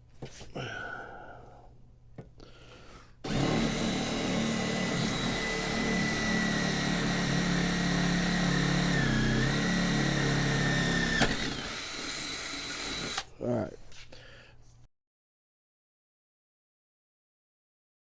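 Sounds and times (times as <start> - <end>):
power drill whining: 3.2 - 13.3.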